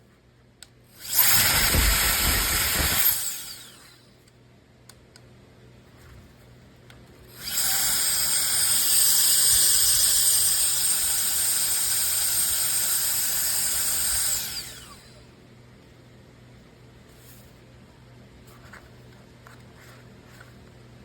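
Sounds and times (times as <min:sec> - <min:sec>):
air duster motor whining: 0:01.0 - 0:04.0, 0:07.4 - 0:15.2.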